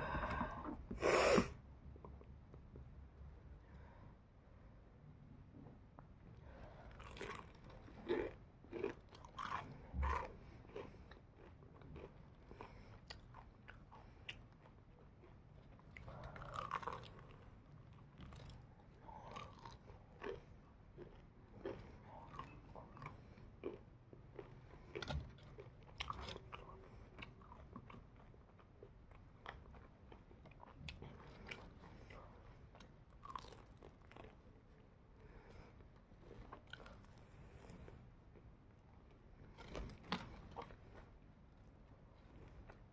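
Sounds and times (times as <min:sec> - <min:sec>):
person chewing crispy chicken: 0:06.5 - 0:41.1.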